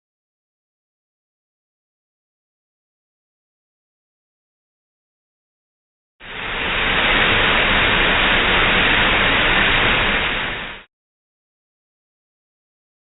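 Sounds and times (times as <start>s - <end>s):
loud steady hiss: 6.2s - 10.9s.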